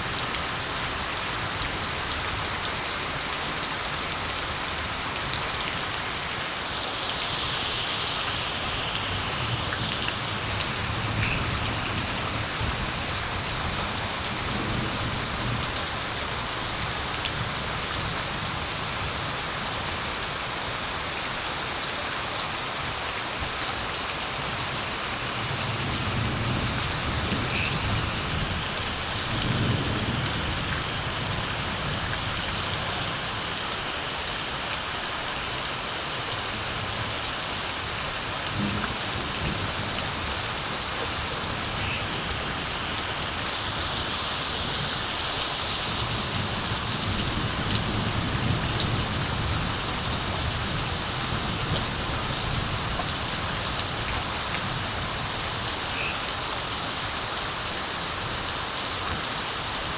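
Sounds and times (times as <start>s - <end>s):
steady rain falling: 0.0s - 59.9s
distant thunder rumbles: 38.4s - 43.3s.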